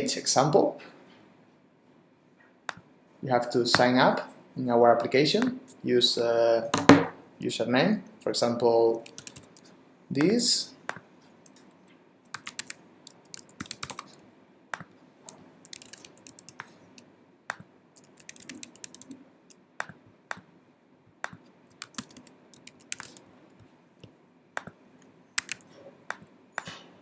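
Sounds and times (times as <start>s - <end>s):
typing on computer keyboard: 9.0s - 9.6s, 12.3s - 14.2s, 15.3s - 16.7s, 17.5s - 19.2s, 21.2s - 23.2s, 25.4s - 26.7s.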